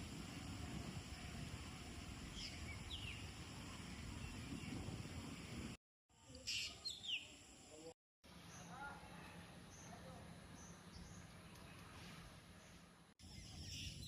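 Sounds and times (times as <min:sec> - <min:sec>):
low rumble of wind: 0:00.0 - 0:05.8
bird chirps: 0:06.4 - 0:07.4.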